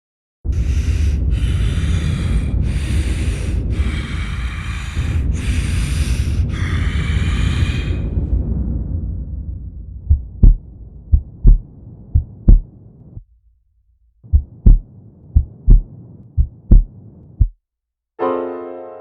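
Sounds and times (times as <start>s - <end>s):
heartbeat thumps: 10.0s - 13.3s, 14.2s - 17.6s
piano chord: 18.2s - 19.0s.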